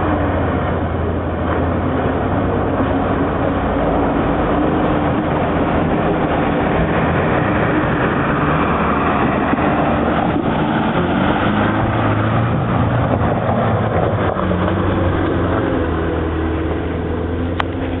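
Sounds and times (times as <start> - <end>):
engine running under load: 0.0 - 18.0.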